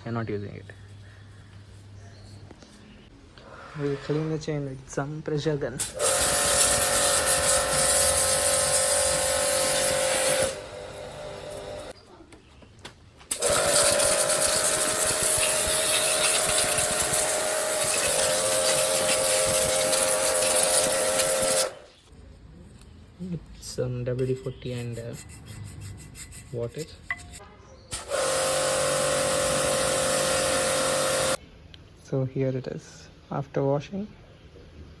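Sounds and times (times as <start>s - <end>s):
water spray hiss: 5.8s - 10.6s, 13.3s - 21.8s, 28.0s - 31.4s
pressure washer motor whine: 5.8s - 11.9s, 13.3s - 21.8s, 27.9s - 31.4s.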